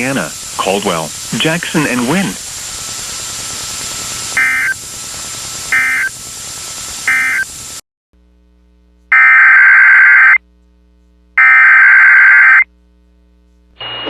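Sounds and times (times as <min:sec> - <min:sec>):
warbling digital data bursts: 0:04.4 - 0:04.8, 0:05.7 - 0:06.2, 0:07.0 - 0:07.5.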